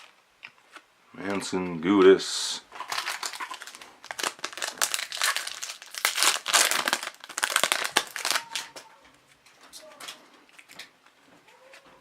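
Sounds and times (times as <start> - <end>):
foil wrapper crinkling: 2.7 - 8.9.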